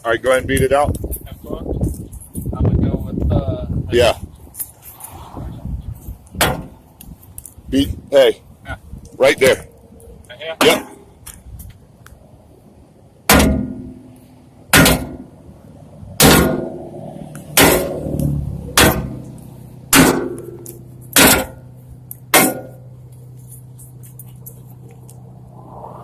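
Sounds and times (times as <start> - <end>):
sledgehammer clanging on metal: 6.4 - 6.8, 10.6 - 11.1, 13.3 - 14.0, 14.7 - 15.3, 16.2 - 16.9, 17.5 - 18.2, 18.8 - 22.9.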